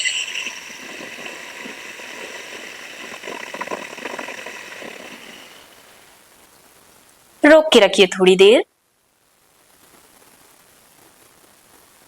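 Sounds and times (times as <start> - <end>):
rough breath inhalation: 0.0 - 6.0.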